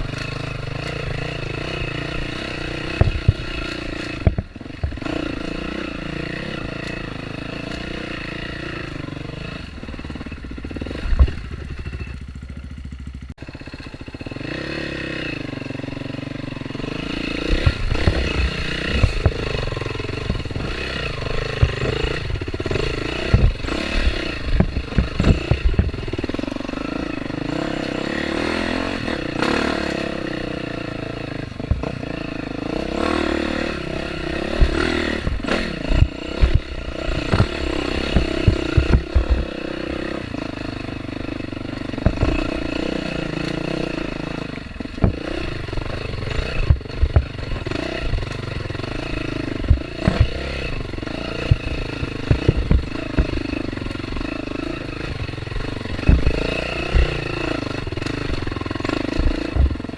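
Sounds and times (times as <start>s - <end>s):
dirt bike engine revving: 0.0s - 59.9s
low thumps and knocks: 2.8s - 5.2s, 10.9s - 11.7s, 17.5s - 26.4s, 31.6s - 32.1s, 33.4s - 39.9s, 41.9s - 42.7s, 44.9s - 48.7s, 49.4s - 59.9s.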